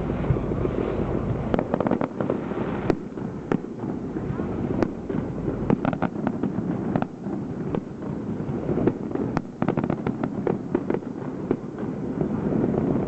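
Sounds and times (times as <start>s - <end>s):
low rumble: 0.0s - 5.8s
fireworks popping and crackling: 0.0s - 13.0s.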